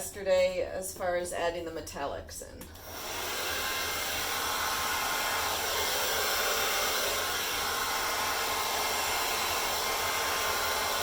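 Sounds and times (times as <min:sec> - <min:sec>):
hair dryer running: 0:02.7 - 0:11.0.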